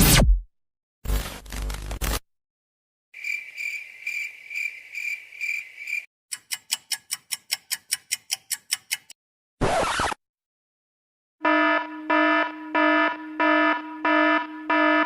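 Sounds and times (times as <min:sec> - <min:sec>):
cricket chirping: 0:03.2 - 0:06.1.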